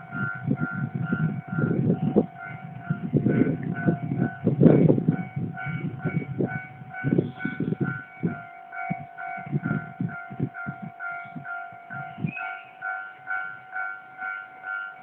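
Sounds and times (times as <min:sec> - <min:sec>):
level-crossing warning bell: 0:00.0 - 0:15.0
wind buffeting microphone: 0:00.0 - 0:15.0.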